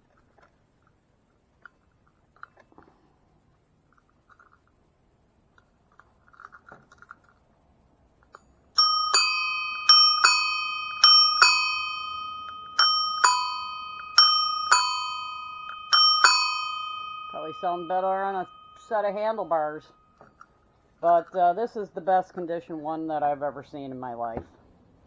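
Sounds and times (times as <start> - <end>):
ding-dong bicycle bell: 8.8 - 20.4.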